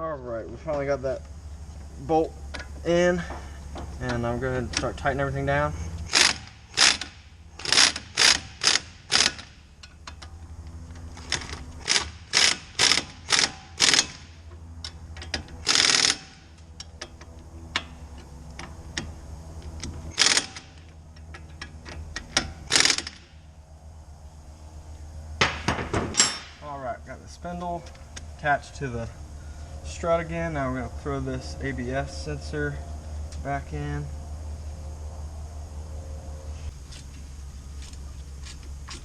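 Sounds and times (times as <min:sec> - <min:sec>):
ratchet wrench clicking: 0:06.1 - 0:10.3, 0:11.2 - 0:14.2, 0:15.2 - 0:17.9, 0:19.8 - 0:23.2.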